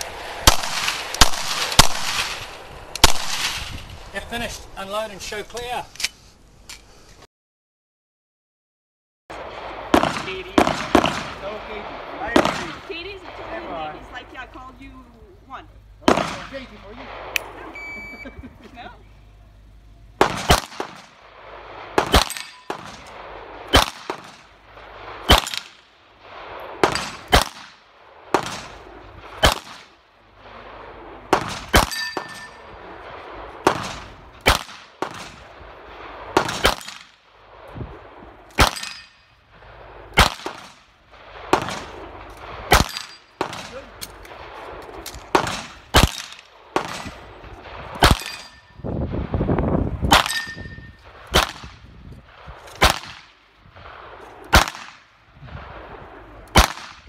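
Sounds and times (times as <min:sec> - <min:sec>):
handgun shots: 0:48.0 - 0:48.6.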